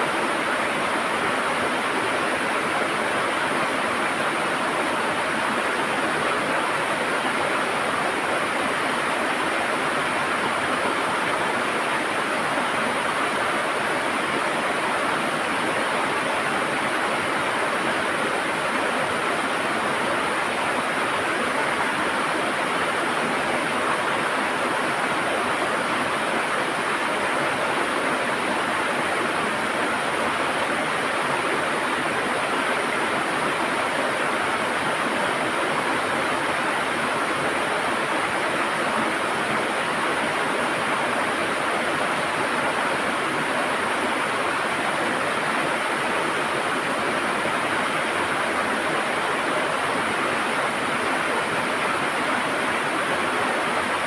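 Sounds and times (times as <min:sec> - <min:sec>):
river water rushing and gurgling: 0:00.0 - 0:54.0.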